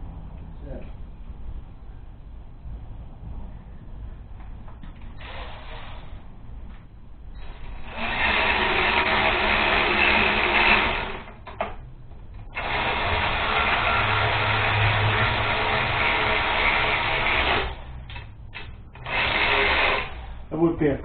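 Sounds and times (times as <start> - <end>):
power tool running: 7.4 - 11.4, 12.5 - 20.4.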